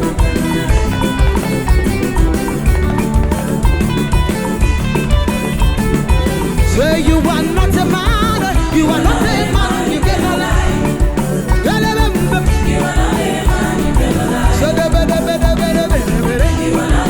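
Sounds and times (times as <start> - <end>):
gospel band music: 0.0 - 17.0
person singing: 6.5 - 17.0.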